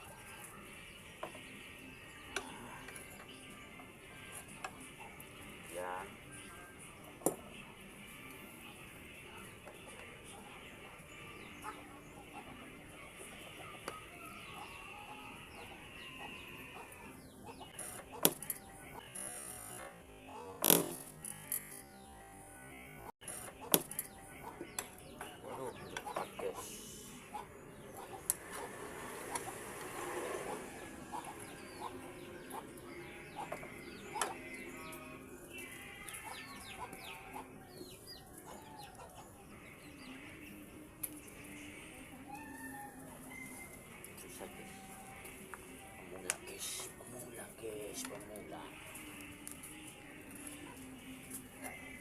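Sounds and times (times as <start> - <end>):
chickens clucking: 9.4 - 20.7, 23.2 - 52.0
animal calls: 11.3 - 22.0, 22.8 - 39.5, 42.1 - 49.2.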